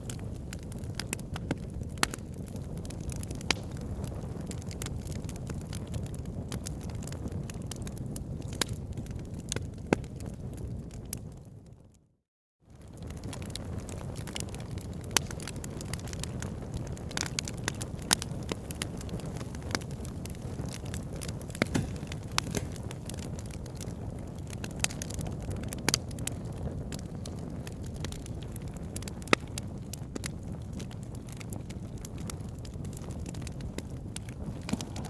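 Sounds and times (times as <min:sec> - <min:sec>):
campfire flames rumbling: 0:00.0 - 0:12.0, 0:12.7 - 0:35.0
fire crackling and popping: 0:00.0 - 0:12.0, 0:12.7 - 0:35.0.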